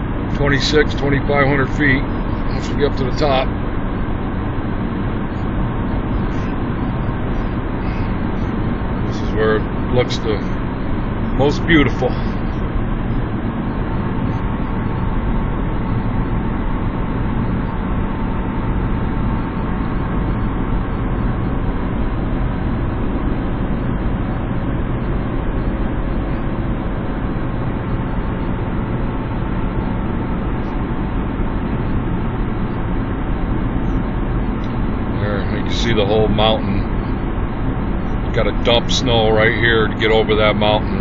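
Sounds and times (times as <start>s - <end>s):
car engine and tyre noise: 0.0s - 41.0s.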